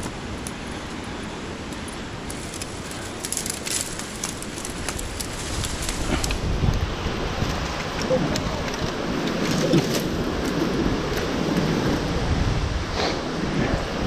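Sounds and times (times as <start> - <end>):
small crackles and ticks: 0.0 - 12.0
wind buffeting microphone: 0.0 - 14.0.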